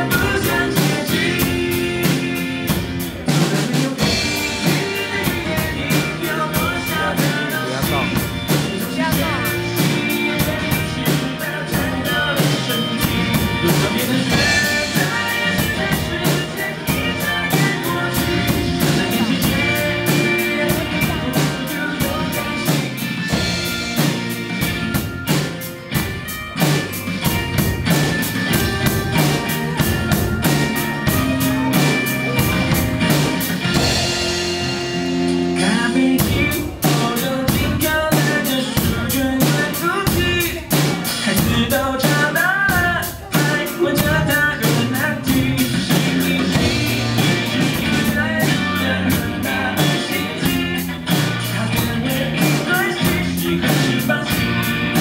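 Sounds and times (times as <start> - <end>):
drum kit playing: 0.0 - 55.0
rock song with singing and guitar: 0.0 - 55.0.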